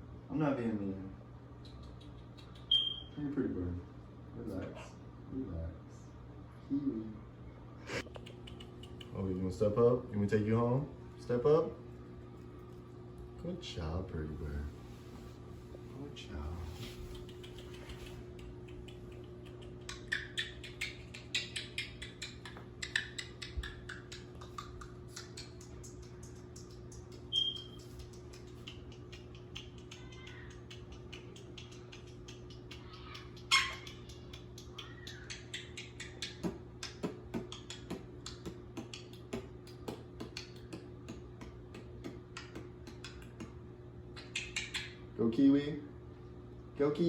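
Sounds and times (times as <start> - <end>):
steady low hum: 0.0 - 47.0
parrot chirping: 1.7 - 3.2, 18.6 - 36.4, 44.2 - 45.1
small irregular clicks: 17.1 - 43.5
parrot squawking: 32.8 - 36.4.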